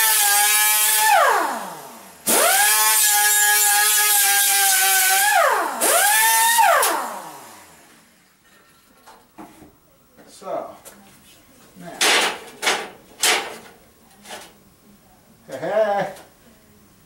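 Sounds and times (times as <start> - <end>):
abrasive wheel cutting steel: 0.0 - 1.6, 2.3 - 7.2
cut-off tool motor whine: 0.0 - 7.9.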